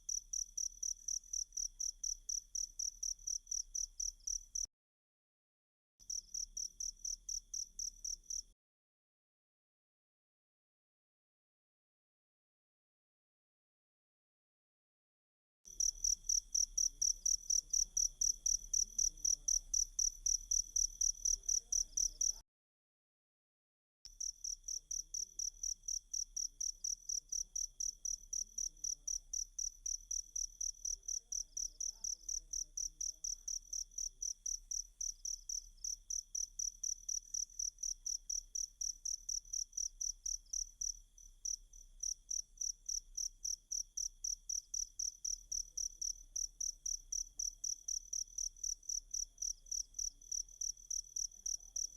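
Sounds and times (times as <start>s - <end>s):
cricket chirping: 0.0s - 4.7s, 6.1s - 8.4s, 15.7s - 22.4s, 24.2s - 51.9s.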